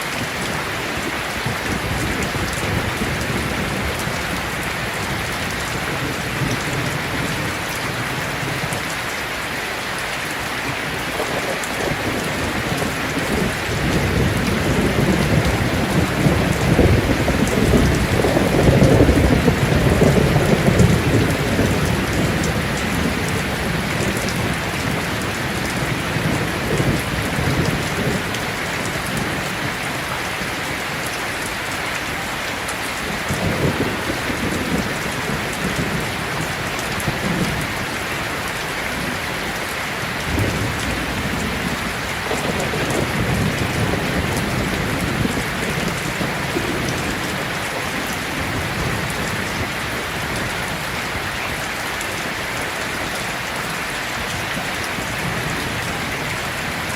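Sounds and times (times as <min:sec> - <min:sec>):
heavy rain hissing: 0:00.0 - 0:56.9
thunder rumbling: 0:10.9 - 0:29.9, 0:33.0 - 0:38.0, 0:40.0 - 0:51.2.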